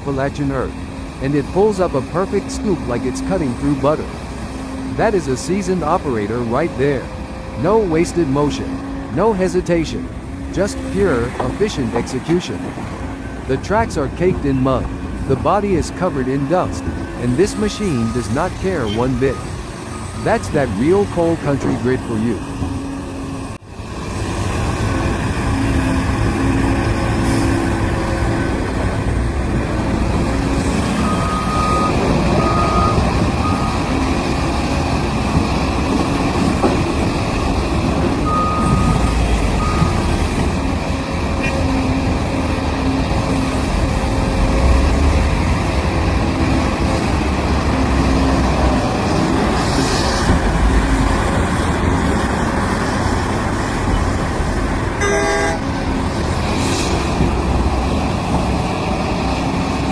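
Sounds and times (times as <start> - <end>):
heavy diesel machinery running: 0.0 - 59.9
backup alarm beeping: 55.0 - 55.6.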